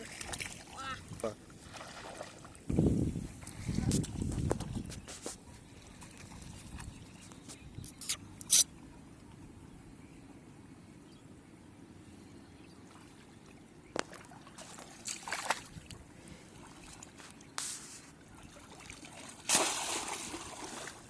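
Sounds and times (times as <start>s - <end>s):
shallow water splashing: 1.6s - 2.6s, 12.9s - 21.0s.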